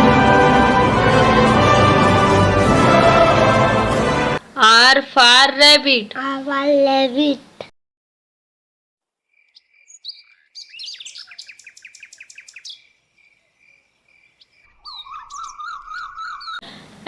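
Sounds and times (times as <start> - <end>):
bird chirping: 9.3 - 16.6
bird warbling trill: 9.3 - 16.6.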